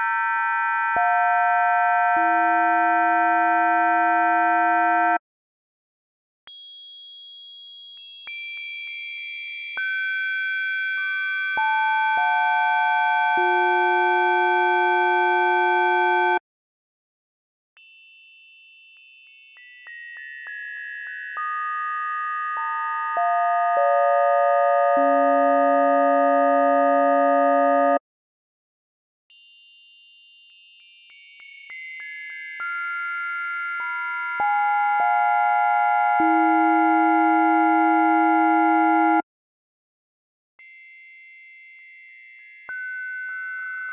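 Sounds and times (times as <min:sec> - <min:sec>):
synthesized bell chord: 0:23.2 - 0:28.0.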